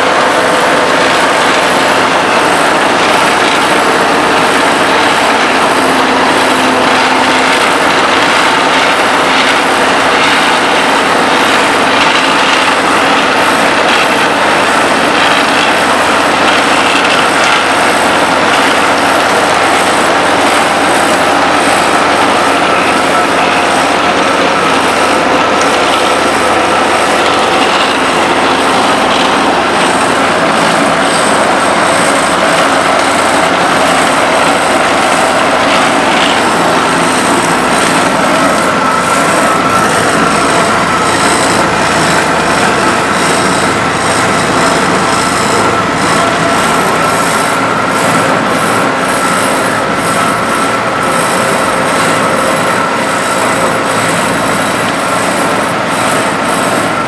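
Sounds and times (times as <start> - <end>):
constant high whine: 0.0 - 57.0
heavy machinery engine running: 0.0 - 57.0.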